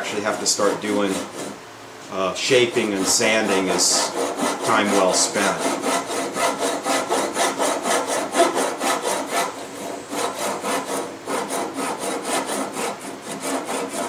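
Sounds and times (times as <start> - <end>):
hand saw cutting hardwood: 0.0 - 1.6, 2.4 - 14.0.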